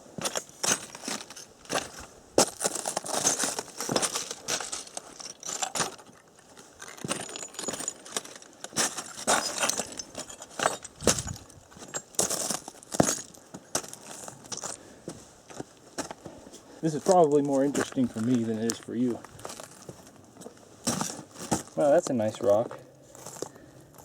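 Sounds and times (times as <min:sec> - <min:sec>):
footsteps on rock rubble: 0:00.0 - 0:24.0
rock fragments clinking: 0:00.4 - 0:14.8.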